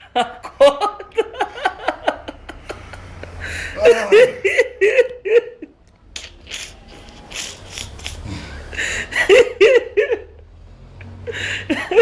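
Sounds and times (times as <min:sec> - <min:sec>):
people giggling: 0:00.0 - 0:05.8, 0:06.5 - 0:10.4, 0:11.6 - 0:12.0
man snoring: 0:03.7 - 0:04.5, 0:08.2 - 0:08.8.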